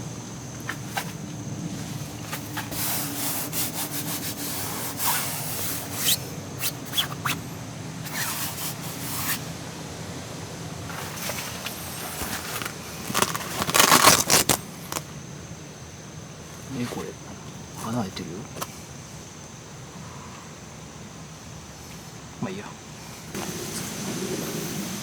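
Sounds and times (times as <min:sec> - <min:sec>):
faint steady hum: 0:00.0 - 0:25.0
camping gear rubbing and scraping: 0:00.6 - 0:09.6, 0:10.9 - 0:15.1
short rustles: 0:10.9 - 0:15.1.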